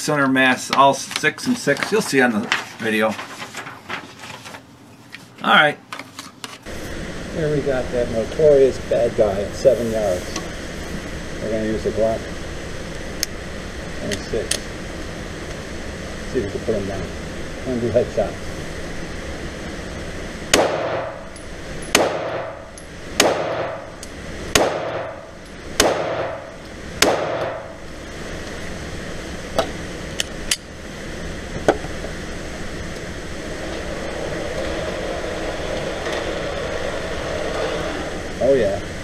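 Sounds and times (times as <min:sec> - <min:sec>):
ventilation hum: 0:00.0 - 0:39.0
pistol shots indoors: 0:20.5 - 0:21.2, 0:21.9 - 0:22.6, 0:23.2 - 0:23.8, 0:24.5 - 0:25.2, 0:25.8 - 0:26.4, 0:27.0 - 0:27.7.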